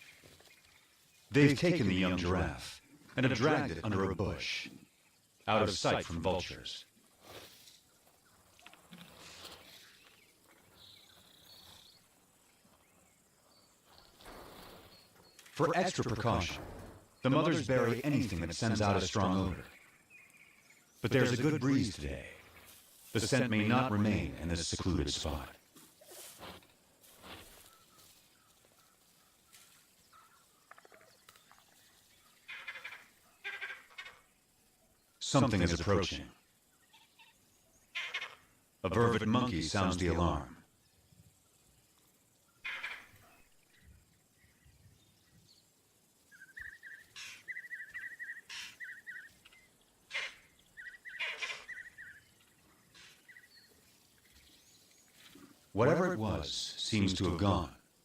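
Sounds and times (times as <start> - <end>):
soft rustles: 7.1 - 11.9, 25.7 - 30.0
short animal calls: 32.4 - 34.2, 37.9 - 38.5, 47.1 - 52.2.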